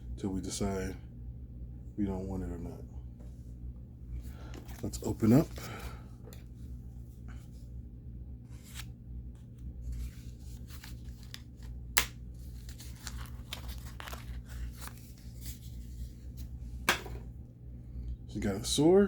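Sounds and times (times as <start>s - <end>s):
sharp packaging snap: 11.9s - 12.2s.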